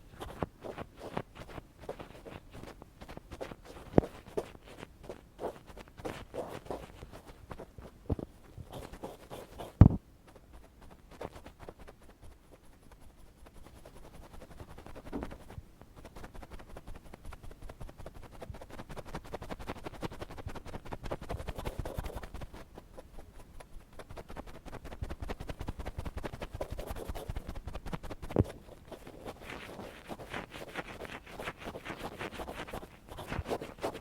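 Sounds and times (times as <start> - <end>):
ear pick scratching: 24.0 - 34.0.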